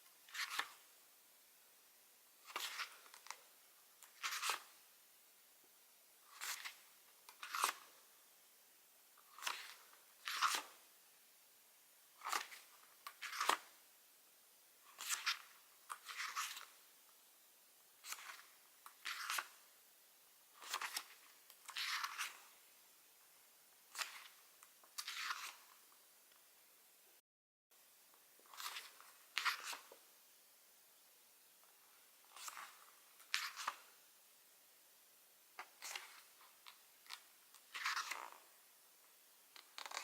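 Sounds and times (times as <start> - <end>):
paper pages turning: 0.3 - 0.8, 2.4 - 3.4, 4.0 - 4.8, 6.3 - 8.0, 9.3 - 10.8, 12.2 - 13.8, 14.9 - 16.7, 18.0 - 19.6, 20.6 - 22.5, 23.9 - 25.8, 28.5 - 30.0, 32.3 - 33.9, 35.7 - 38.5, 39.5 - 40.0.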